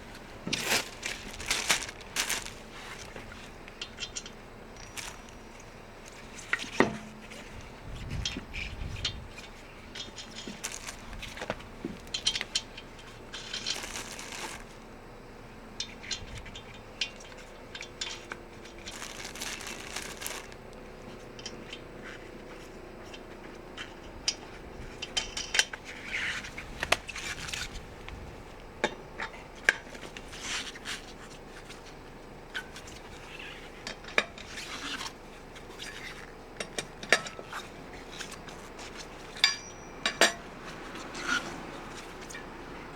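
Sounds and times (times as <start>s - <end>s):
metal tools clinking: 0.5s - 6.8s, 9.0s - 14.8s, 17.0s - 20.7s, 36.6s - 40.5s.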